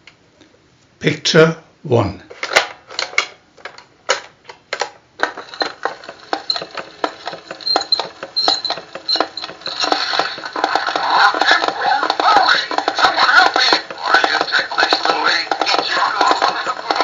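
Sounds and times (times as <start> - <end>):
fast percussive clicking: 5.2 - 17.0
high repeating tone: 5.4 - 10.4.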